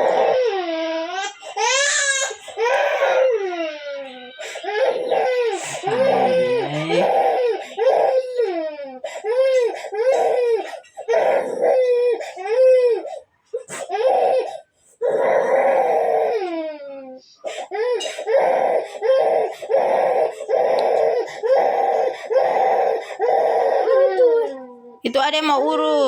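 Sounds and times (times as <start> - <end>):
young child crying: 2.8 - 8.1.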